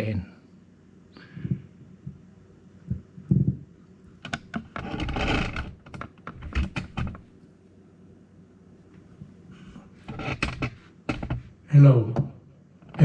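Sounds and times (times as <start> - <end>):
control clicks and knocks: 4.2 - 7.2, 10.1 - 11.5.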